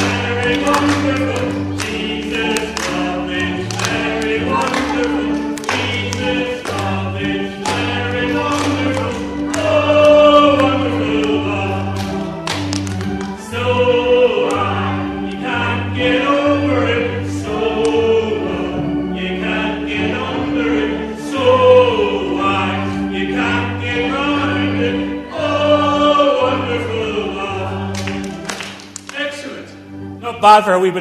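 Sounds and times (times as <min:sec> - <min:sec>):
choir singing gospel: 0:00.0 - 0:30.0
keyboard accompaniment: 0:00.0 - 0:31.0.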